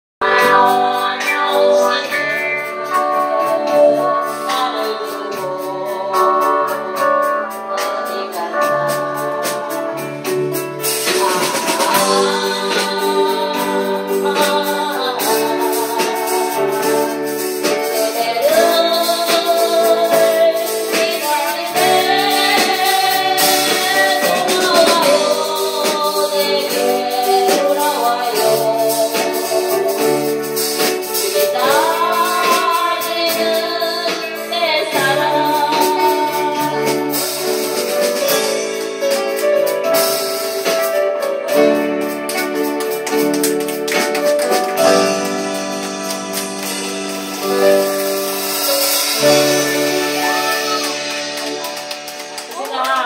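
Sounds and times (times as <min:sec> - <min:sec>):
person singing: 0:00.2 - 0:53.0
song with percussion beat: 0:00.2 - 0:53.0.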